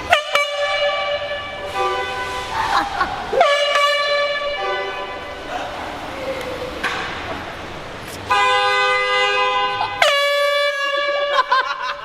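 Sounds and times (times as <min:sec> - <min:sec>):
air horn blasts: 0:00.0 - 0:02.6, 0:03.3 - 0:05.5, 0:08.2 - 0:11.5.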